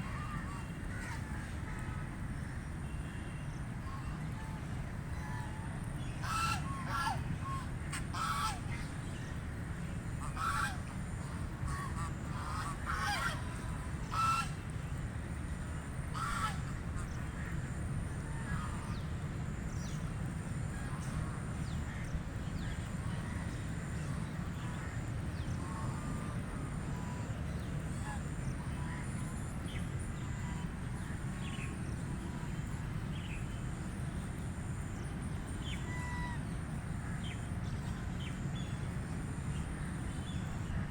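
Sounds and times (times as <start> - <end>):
ducks quacking: 6.2 - 8.7, 10.2 - 10.8, 11.7 - 14.5, 16.2 - 17.1.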